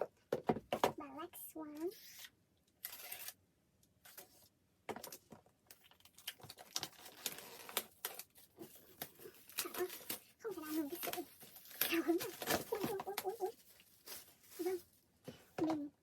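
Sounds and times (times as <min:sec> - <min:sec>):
paper and plastic rustling: 0:04.0 - 0:15.9.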